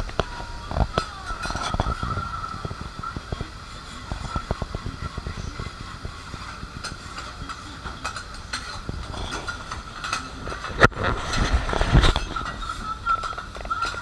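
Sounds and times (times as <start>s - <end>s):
food sizzling on a griddle: 0.0s - 14.0s
metal spatulas tapping iron plate: 6.4s - 14.0s.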